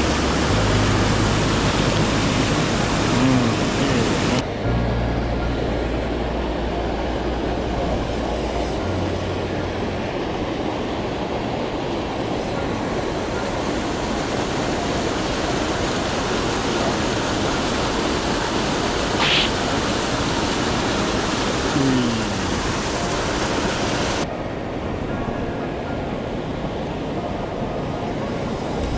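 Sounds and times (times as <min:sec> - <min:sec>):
stream water rushing: 0:00.0 - 0:25.0
short sharp hiss: 0:19.2 - 0:19.6.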